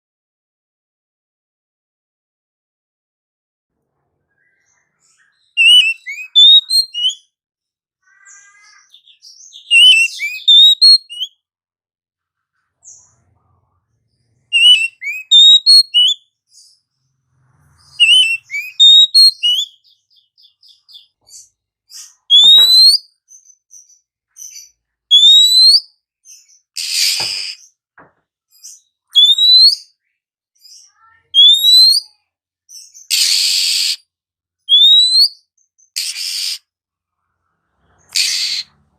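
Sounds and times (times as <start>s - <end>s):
bird singing whistles and chatter: 4.3s - 7.3s, 8.1s - 11.4s, 14.5s - 16.8s, 17.7s - 27.8s, 28.6s - 30.0s, 30.6s - 34.1s, 34.7s - 36.7s, 38.0s - 38.8s
bird harsh rasp: 17.9s - 19.7s, 26.8s - 27.7s, 33.1s - 34.0s, 36.0s - 36.7s, 37.9s - 38.8s.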